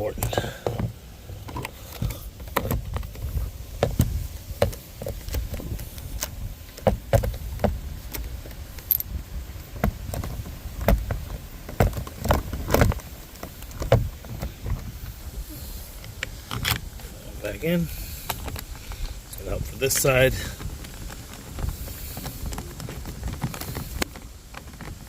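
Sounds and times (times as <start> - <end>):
steady low rumble: 0.0 - 25.0
plastic and metal parts clicking: 16.0 - 17.0.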